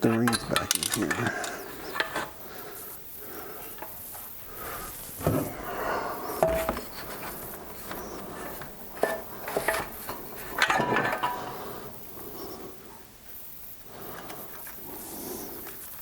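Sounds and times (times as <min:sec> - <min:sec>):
metal parts clinking: 0:00.1 - 0:02.3.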